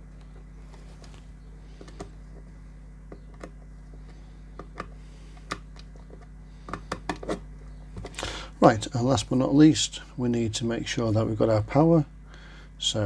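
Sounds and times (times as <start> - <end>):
low electrical hum: 0.0 - 13.0
wires and connectors clicking: 1.8 - 8.3.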